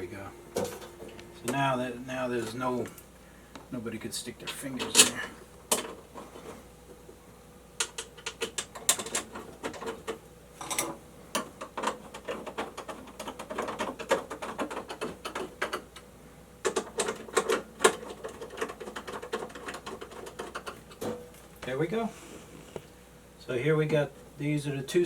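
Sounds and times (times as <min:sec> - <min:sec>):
metal parts clicking and rattling: 0:04.5 - 0:06.0, 0:07.8 - 0:15.8.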